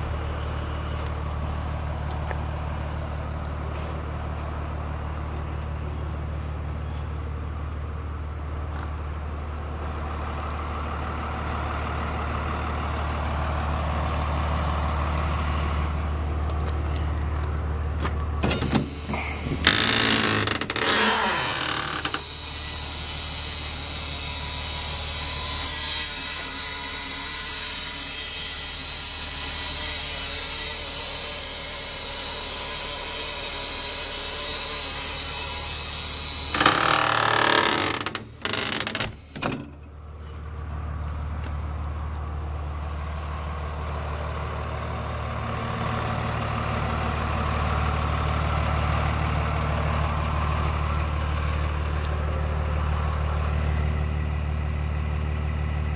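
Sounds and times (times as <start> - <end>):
bus engine idling: 0.0 - 22.5, 35.8 - 55.9.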